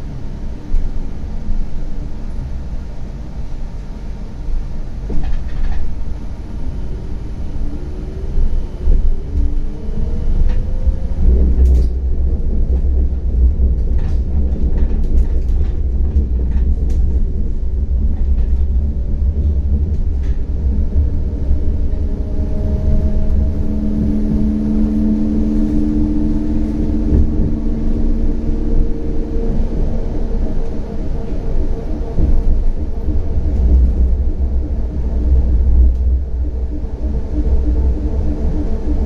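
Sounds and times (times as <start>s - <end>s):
tram wheels rumbling on rails: 0.0s - 39.0s
steady motor hum: 15.8s - 39.0s.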